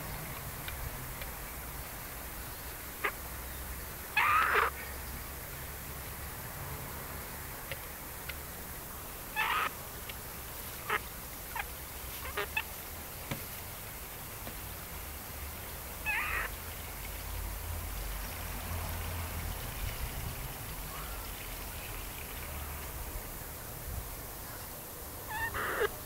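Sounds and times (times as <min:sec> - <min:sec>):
chicken squawks: 0:04.1 - 0:04.8, 0:09.3 - 0:09.8, 0:10.8 - 0:12.7, 0:16.0 - 0:16.5, 0:25.3 - 0:26.0.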